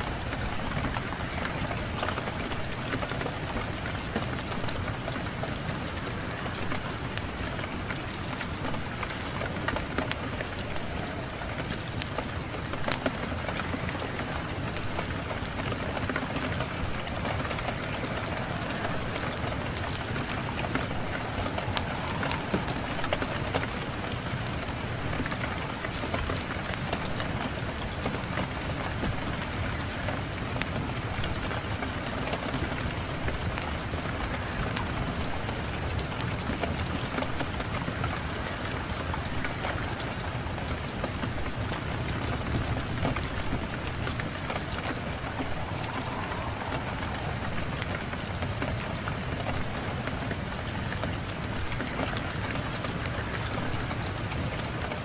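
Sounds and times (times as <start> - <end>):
fire crackling and popping: 0.0 - 55.0
wind rushing: 15.9 - 26.0, 42.7 - 50.6.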